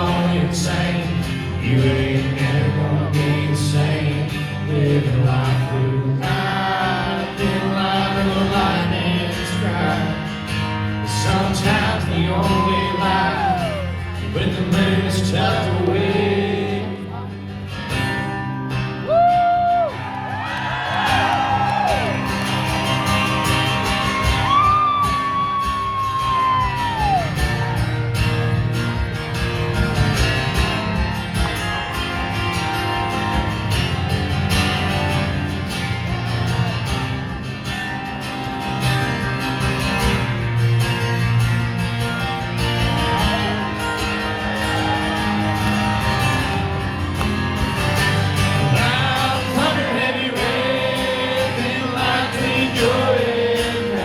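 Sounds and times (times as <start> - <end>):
bass and drums: 21.2 - 49.4
lead guitar bending notes: 21.5 - 54.0.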